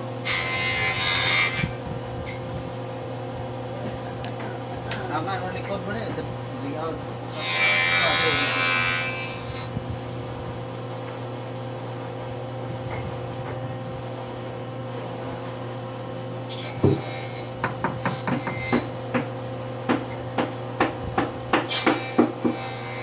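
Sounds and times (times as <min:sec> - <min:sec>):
electric hum: 0:00.0 - 0:23.0
knocks and taps on wood: 0:17.6 - 0:19.3, 0:19.9 - 0:22.6.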